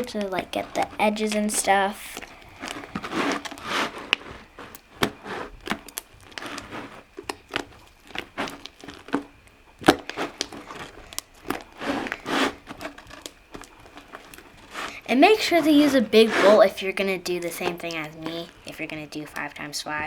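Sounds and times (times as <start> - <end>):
hands squelching slime: 0.0 - 20.0.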